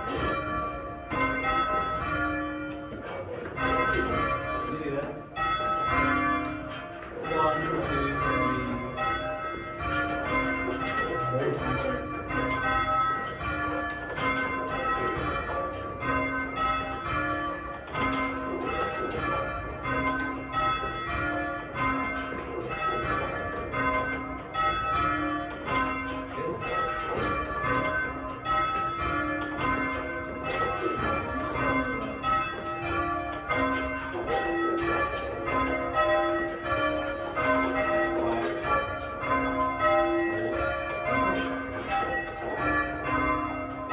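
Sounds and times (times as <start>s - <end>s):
church bells ringing: 0.0s - 43.9s.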